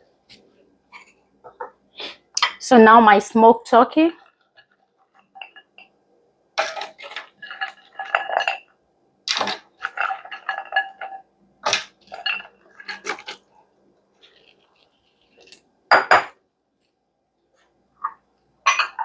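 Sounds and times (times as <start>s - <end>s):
utensils and dishes clinking: 4.0s - 6.0s, 6.6s - 13.5s, 18.0s - 19.0s.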